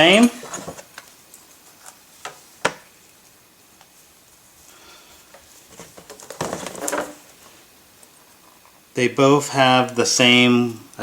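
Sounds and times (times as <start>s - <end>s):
leather straps rustling: 0.0s - 1.1s, 5.4s - 7.7s.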